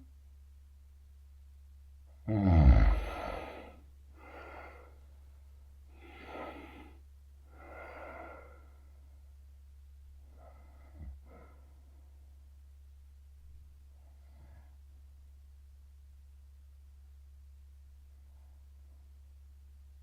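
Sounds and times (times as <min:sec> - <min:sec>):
quiet breaths: 0:02.0 - 0:20.0
man snoring with rattle: 0:02.3 - 0:03.8.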